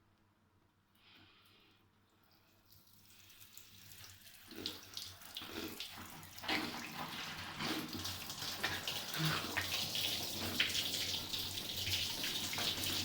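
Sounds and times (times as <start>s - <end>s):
water running and bubbling: 2.4s - 13.0s.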